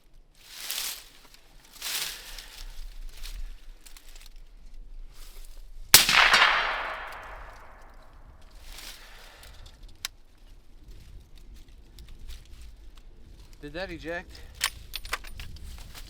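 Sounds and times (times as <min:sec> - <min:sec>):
soft rustles: 0:00.3 - 0:05.6
suppressed rifle shot: 0:06.0 - 0:08.0.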